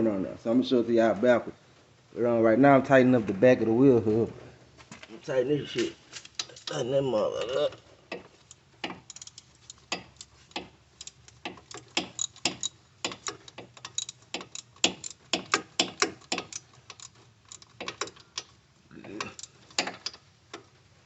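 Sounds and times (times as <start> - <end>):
ratchet wrench clicking: 8.1 - 18.6, 19.2 - 20.2.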